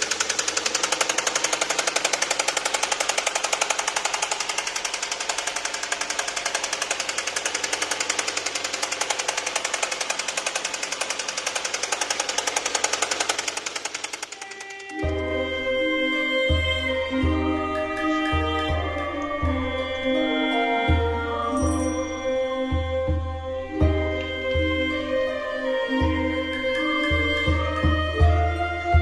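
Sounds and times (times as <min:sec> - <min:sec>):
car engine knocking: 0:00.0 - 0:15.1.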